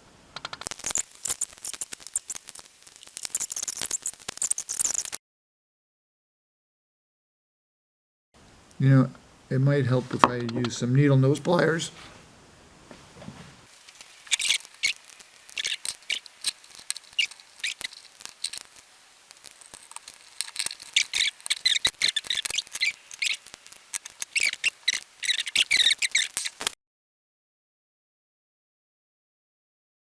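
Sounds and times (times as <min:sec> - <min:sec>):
pliers clicking and scraping metal: 0:00.4 - 0:05.2, 0:13.8 - 0:26.7.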